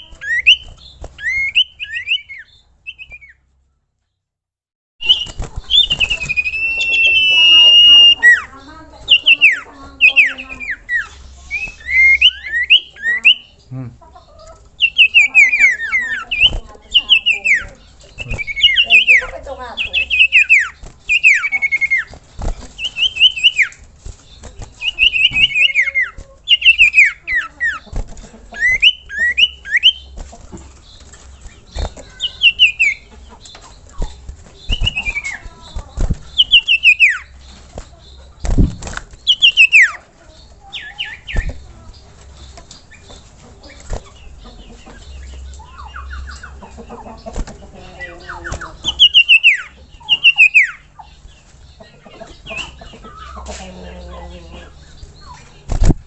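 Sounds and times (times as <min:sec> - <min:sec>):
bird calling descending notes: 0:05.0 - 0:22.1.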